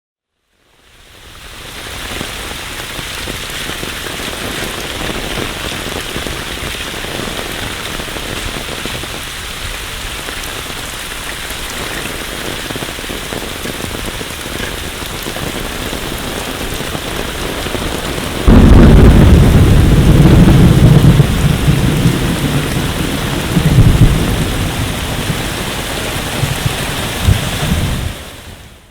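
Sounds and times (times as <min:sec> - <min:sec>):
heavy rain falling: 0:00.9 - 0:28.9
loud low rumble: 0:18.5 - 0:25.0.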